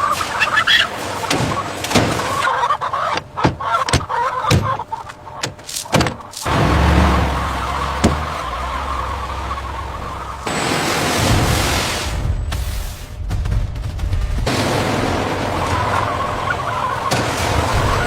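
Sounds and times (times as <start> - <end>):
low mechanical rumble: 2.5 - 18.0
sharp knocks and clattering: 3.1 - 6.6.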